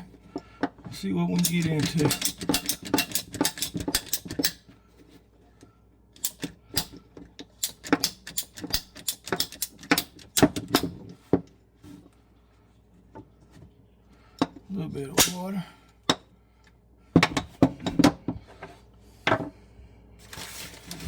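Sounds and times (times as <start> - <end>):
hand tool clicking and cutting: 1.4 - 4.6, 7.6 - 10.9.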